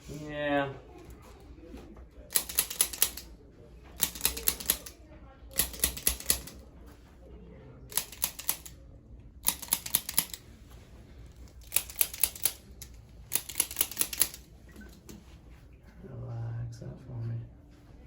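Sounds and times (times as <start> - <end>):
rapid mechanical clicking: 2.3 - 3.3, 4.0 - 5.0, 5.6 - 6.6, 7.9 - 8.7, 9.4 - 10.4, 11.5 - 14.5.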